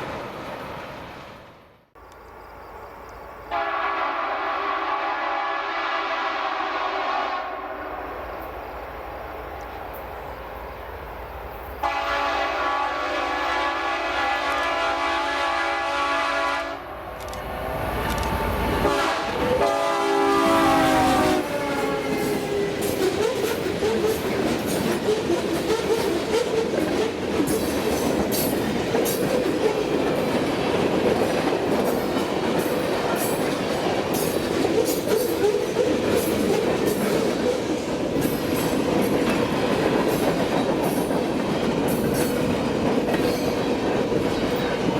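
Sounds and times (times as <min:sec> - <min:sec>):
locomotive air horn: 0:03.5 - 0:08.0, 0:11.8 - 0:16.9, 0:18.6 - 0:22.2
train wheels clicking over rails: 0:20.7 - 0:44.9.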